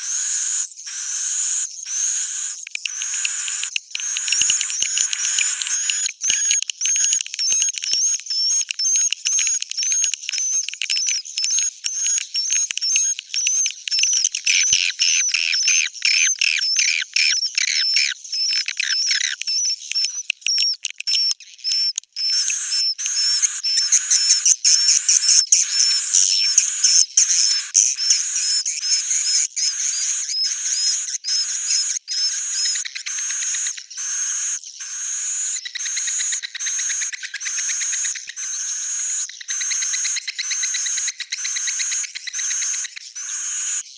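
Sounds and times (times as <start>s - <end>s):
swiftlets twittering: 0.0s - 13.2s, 18.8s - 33.8s.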